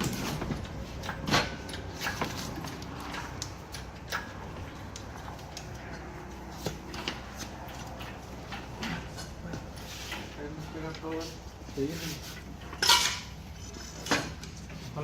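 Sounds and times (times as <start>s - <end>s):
knocks and clatters: 0.0s - 10.3s.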